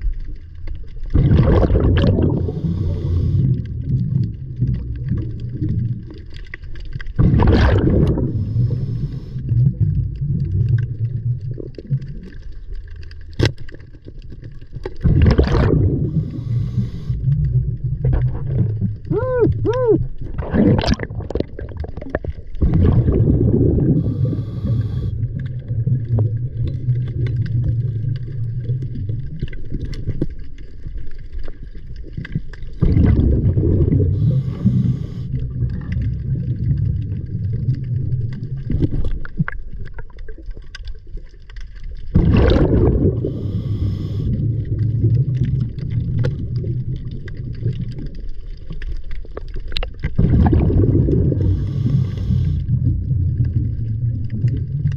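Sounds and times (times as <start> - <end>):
muffled sea water sloshing: 0.0 - 54.9.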